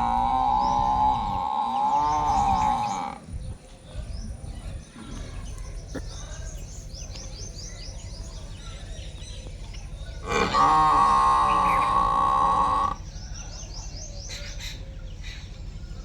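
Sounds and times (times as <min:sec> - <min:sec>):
drawn-out animal call: 0:00.0 - 0:03.4, 0:09.9 - 0:13.5
small birds chirping: 0:00.0 - 0:16.0.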